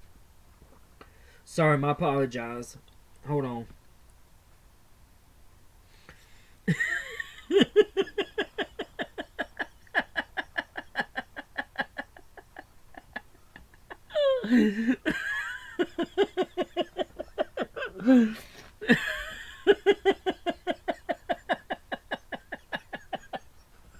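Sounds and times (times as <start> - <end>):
man laughing hard: 6.7 - 23.6.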